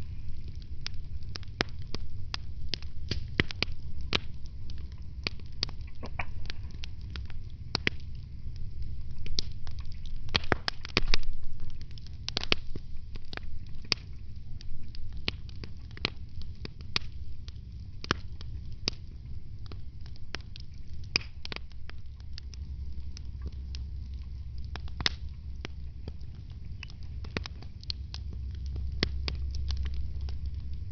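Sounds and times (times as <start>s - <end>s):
low fire rumble: 0.0s - 30.9s
wood fire crackling: 0.0s - 30.9s.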